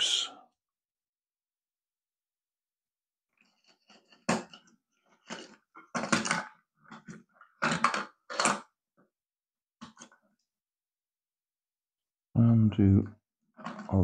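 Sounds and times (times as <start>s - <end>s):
plastic toy parts clacking: 3.8s - 8.7s.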